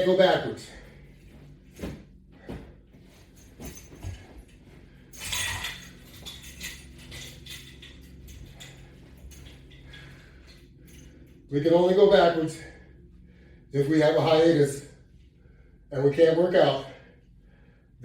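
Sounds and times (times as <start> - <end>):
low hum: 0.0 - 18.0
soft knocks and clinks: 2.5 - 11.3.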